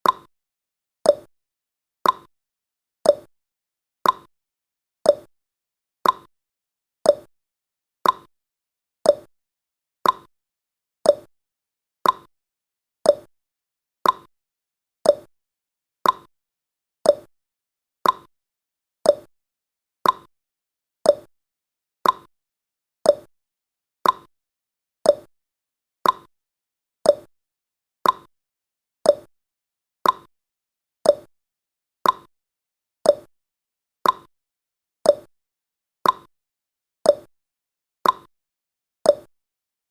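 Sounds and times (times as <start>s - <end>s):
clock ticking: 2.0s - 2.3s, 4.0s - 4.3s, 6.0s - 6.3s, 8.0s - 8.3s, 10.0s - 10.3s, 12.0s - 12.3s, 14.0s - 14.3s, 15.1s - 15.3s, 16.0s - 16.3s, 17.1s - 17.3s, 18.0s - 18.3s, 19.1s - 19.3s, 20.0s - 20.3s, 21.1s - 21.3s, 22.0s - 22.3s, 24.0s - 24.3s, 26.0s - 26.3s, 28.0s - 28.3s, 29.1s - 29.3s, 30.0s - 30.3s, 31.1s - 31.3s, 32.0s - 32.3s, 33.1s - 33.3s, 34.0s - 34.3s, 35.1s - 35.3s, 36.0s - 36.3s, 38.0s - 38.3s, 39.1s - 39.3s.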